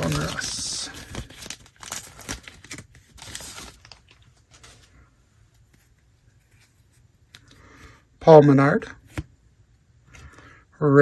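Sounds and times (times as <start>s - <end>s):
card pack wrapper tearing and crinkling: 0.0s - 4.9s.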